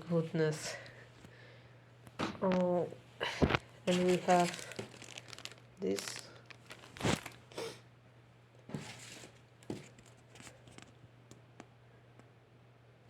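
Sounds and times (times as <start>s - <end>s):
faint steady hum: 0.0s - 13.0s
packaging rustling and crinkling: 3.5s - 7.8s, 8.7s - 11.0s.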